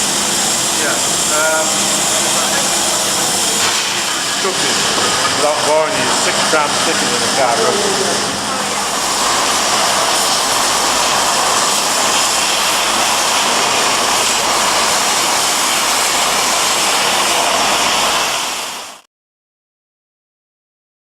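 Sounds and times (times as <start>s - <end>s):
arc welding hiss: 0.0s - 19.0s.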